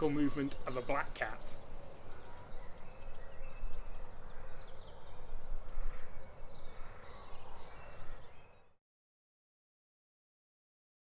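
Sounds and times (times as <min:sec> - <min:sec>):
bird warbling song: 0:00.0 - 0:08.8.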